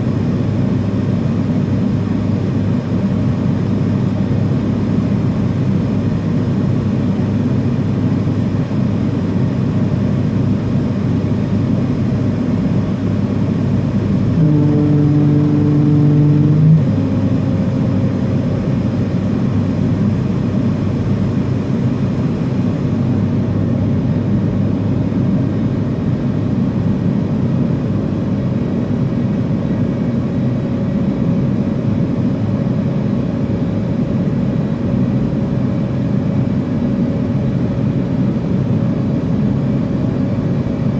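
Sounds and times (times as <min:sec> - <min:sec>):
airliner engine noise in cabin: 0:00.0 - 0:40.9
steady hum with overtones: 0:10.2 - 0:27.7.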